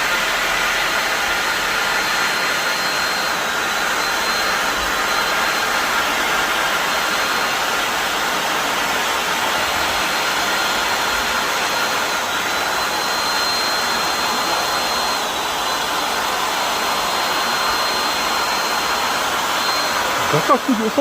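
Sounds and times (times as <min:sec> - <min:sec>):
electric air blower rushing: 0:00.0 - 0:21.0
motor whine: 0:00.0 - 0:21.0.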